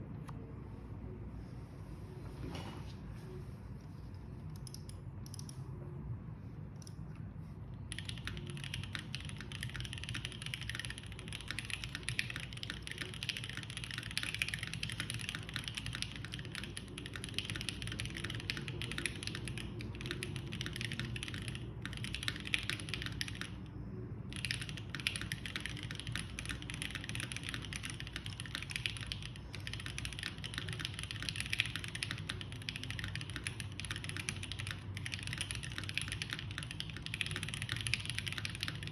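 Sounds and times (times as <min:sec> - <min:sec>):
typing on mechanical keyboard: 0:07.9 - 0:38.9.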